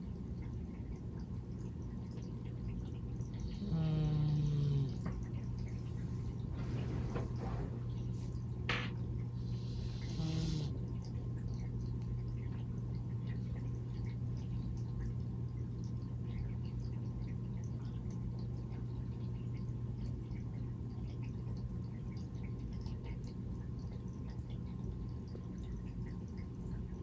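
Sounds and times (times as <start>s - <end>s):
sleeping cat breathing: 9.4s - 10.8s.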